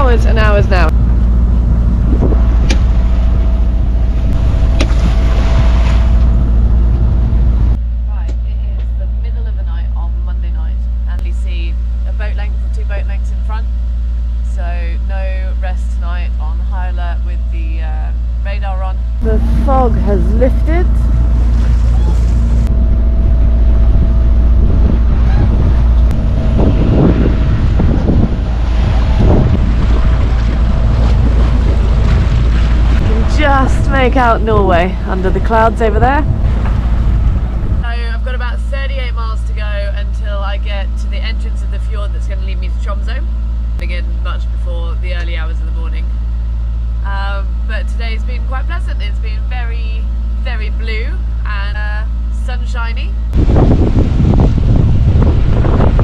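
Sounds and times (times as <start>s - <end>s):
wind buffeting microphone: 0.0s - 7.8s, 19.2s - 38.1s, 53.2s - 56.0s
boat engine droning: 0.0s - 56.0s
steady low hum: 0.0s - 56.0s
rushes of water: 0.2s - 7.8s, 21.0s - 37.8s.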